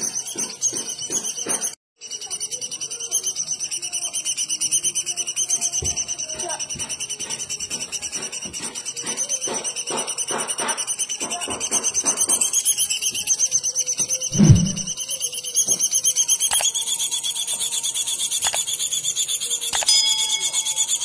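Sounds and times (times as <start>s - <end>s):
loud low thud: 14.3s - 14.9s.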